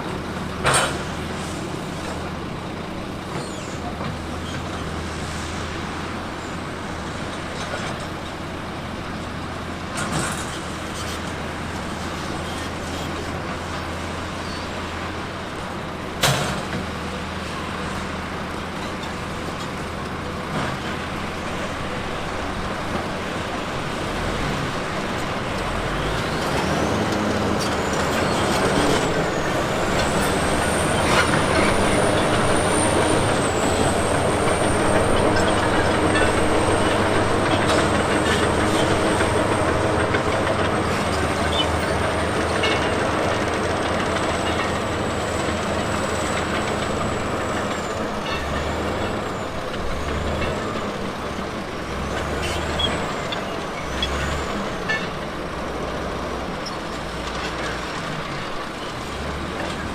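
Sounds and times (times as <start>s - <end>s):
diesel engine running: 0.0s - 59.9s
high metal squeal: 26.2s - 39.7s.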